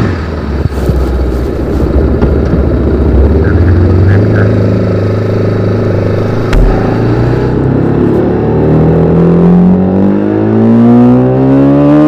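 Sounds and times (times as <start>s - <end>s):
motorcycle engine revving: 2.1s - 12.0s
short thump: 6.3s - 7.5s.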